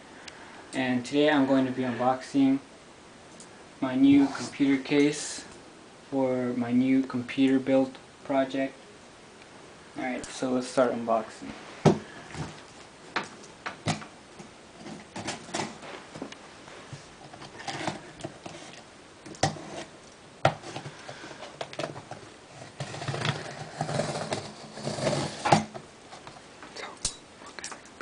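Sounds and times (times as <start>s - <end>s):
packaging rustling and scraping: 14.8s - 26.2s.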